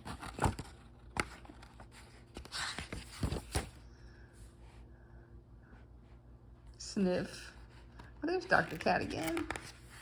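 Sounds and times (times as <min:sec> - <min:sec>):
paper pages rustling: 0:00.0 - 0:03.8.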